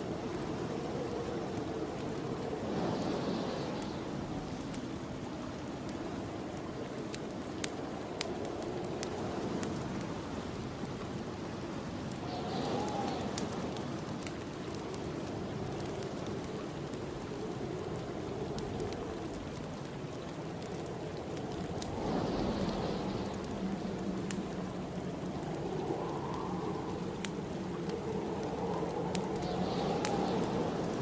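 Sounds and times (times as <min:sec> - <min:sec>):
wind blowing in gusts: 0:00.0 - 0:31.0
wood fire crackling: 0:00.0 - 0:31.0.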